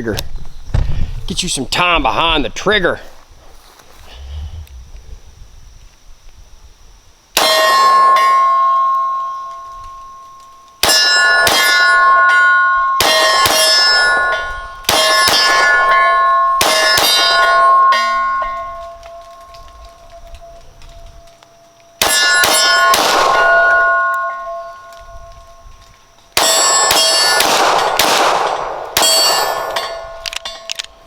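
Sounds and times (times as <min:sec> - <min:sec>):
steel target ringing: 0:07.4 - 0:20.6, 0:22.0 - 0:25.7, 0:26.4 - 0:30.7
pistol shots: 0:13.0 - 0:18.1, 0:22.0 - 0:23.9, 0:26.4 - 0:30.7.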